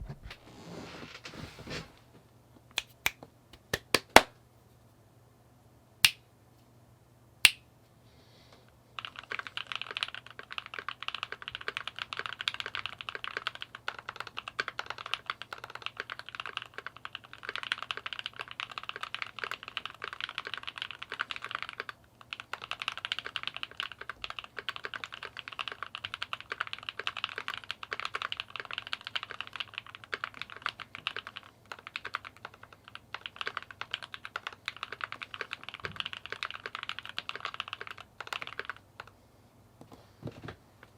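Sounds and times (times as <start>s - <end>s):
mechanical keyboard typing: 9.0s - 39.2s.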